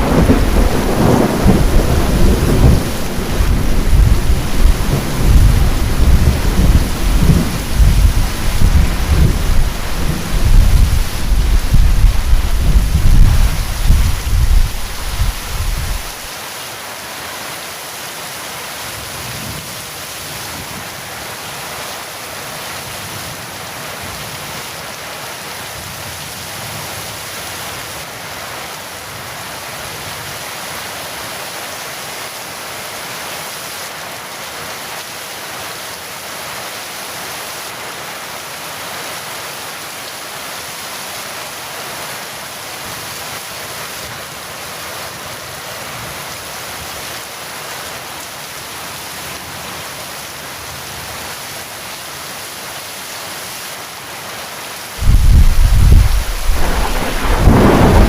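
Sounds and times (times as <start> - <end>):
thunder rumble: 0.0 - 16.3, 55.0 - 58.0
heavy rain falling: 0.0 - 58.0.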